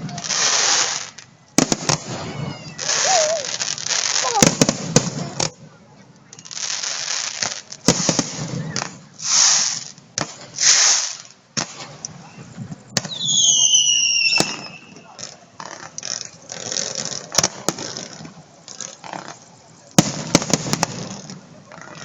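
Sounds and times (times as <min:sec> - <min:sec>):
fireworks bangs: 0:00.0 - 0:05.7, 0:06.3 - 0:22.0
fireworks hissing bursts: 0:00.0 - 0:05.7, 0:06.4 - 0:22.0
falling firework whistle: 0:00.3 - 0:04.7, 0:10.6 - 0:15.3.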